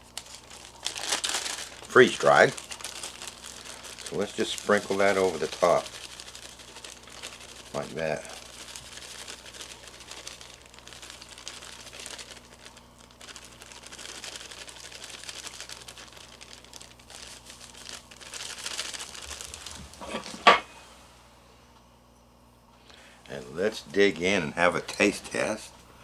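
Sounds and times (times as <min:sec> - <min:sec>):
topping being sprinkled: 0:00.0 - 0:20.4
packaging crinkling and rustling: 0:00.0 - 0:20.6.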